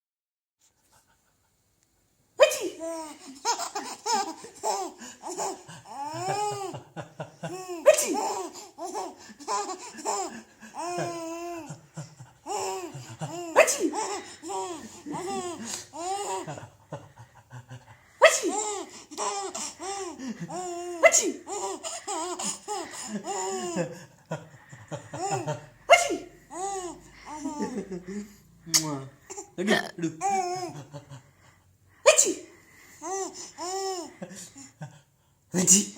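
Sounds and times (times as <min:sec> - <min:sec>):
loud sneeze: 0:02.4 - 0:02.8, 0:07.8 - 0:08.2, 0:13.5 - 0:14.0, 0:18.2 - 0:18.6, 0:21.0 - 0:21.5, 0:25.9 - 0:26.4, 0:32.0 - 0:32.6, 0:35.6 - 0:35.9
young child laughing: 0:02.4 - 0:11.8.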